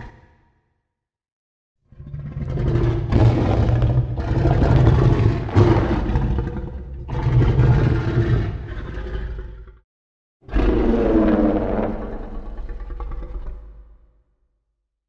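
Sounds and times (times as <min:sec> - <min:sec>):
monster roar: 0:01.9 - 0:09.8, 0:10.5 - 0:13.6.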